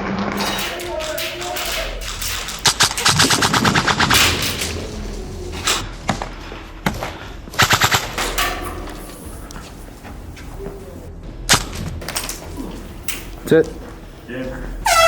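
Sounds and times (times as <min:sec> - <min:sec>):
airsoft rifles firing: 0:00.3 - 0:05.8, 0:07.6 - 0:10.4.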